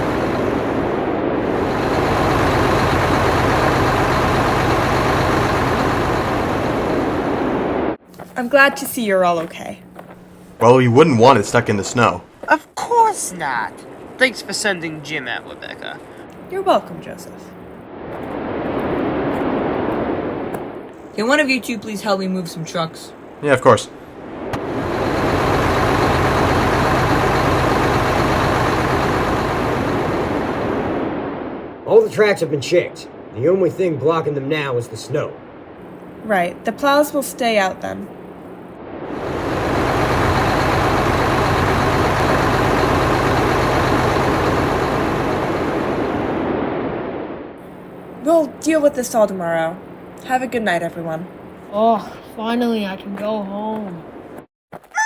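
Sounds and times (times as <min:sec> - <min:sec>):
heavy locomotive engine running: 0:00.0 - 0:12.5, 0:16.4 - 0:17.7, 0:21.2 - 0:31.1, 0:35.8 - 0:46.5, 0:47.6 - 0:54.3.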